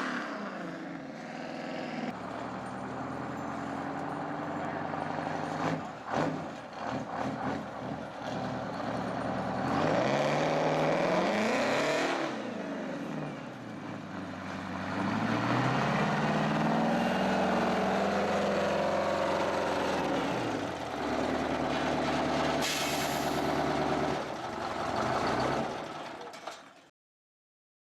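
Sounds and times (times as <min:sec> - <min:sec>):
diesel engine revving: 0:00.0 - 0:26.6
burst of hiss: 0:22.6 - 0:23.5.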